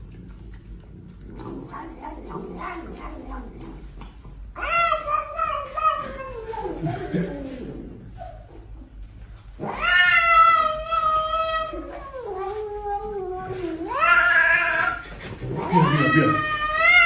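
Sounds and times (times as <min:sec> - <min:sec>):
cat yowling: 0:04.6 - 0:06.8, 0:09.6 - 0:15.0, 0:15.6 - 0:17.0.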